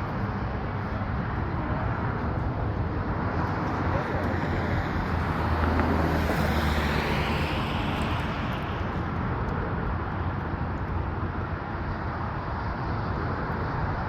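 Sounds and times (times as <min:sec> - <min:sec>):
jet engines roaring: 0:01.0 - 0:10.0.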